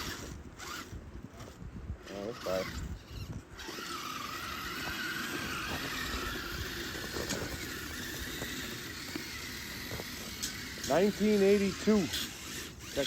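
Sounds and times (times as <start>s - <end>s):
electric motor whine: 0.0s - 13.0s
plastic tracks rattling on snow: 3.7s - 13.0s.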